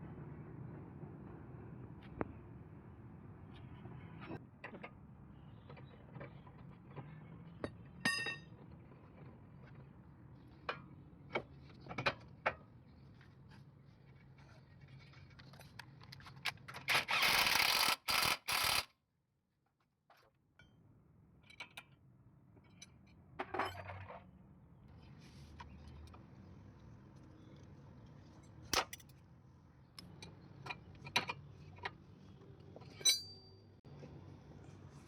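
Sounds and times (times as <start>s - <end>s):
ringing metallic clink: 33.0s - 33.6s.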